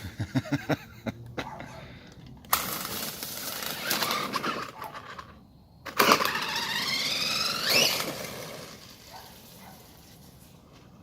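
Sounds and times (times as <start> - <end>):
atv engine revving: 5.9 - 9.2.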